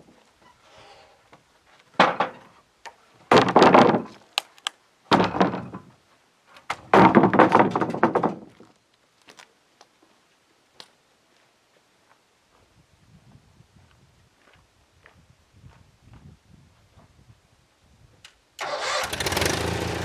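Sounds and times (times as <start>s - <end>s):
heavy timber thunks: 3.3s - 4.2s, 5.1s - 5.9s, 6.7s - 8.5s.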